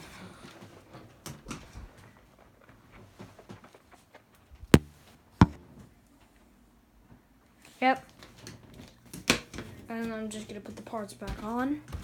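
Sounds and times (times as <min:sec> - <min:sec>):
sharp knocks: 0:04.8 - 0:05.6.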